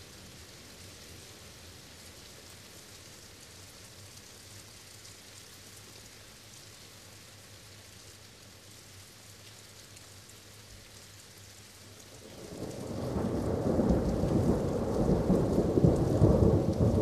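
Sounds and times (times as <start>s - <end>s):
steady rainfall: 0.0s - 17.0s.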